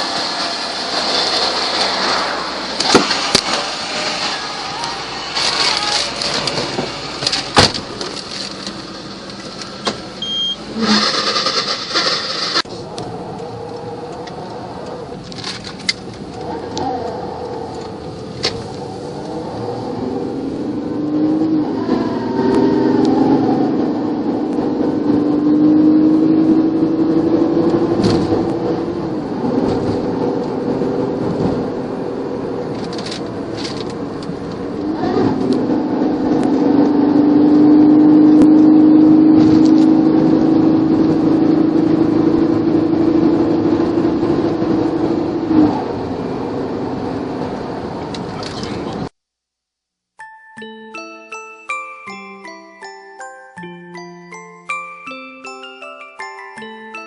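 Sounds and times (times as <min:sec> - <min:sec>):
car engine revving with droning tone: 0:16.2 - 0:48.1.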